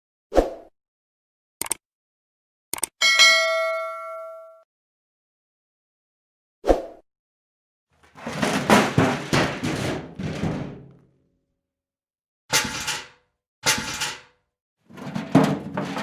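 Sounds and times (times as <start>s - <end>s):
garbage bin knocking and rattling: 8.0s - 11.1s, 12.5s - 14.3s, 14.9s - 16.0s.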